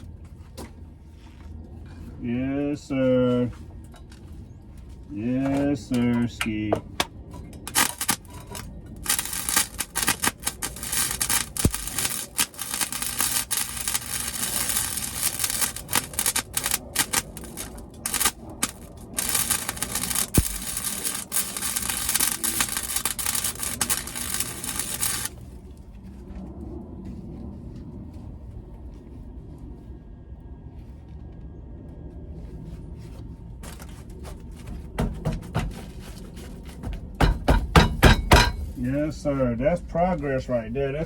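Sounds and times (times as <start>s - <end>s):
low steady hum: 0.0s - 35.0s
welding arc crackling: 7.6s - 25.6s.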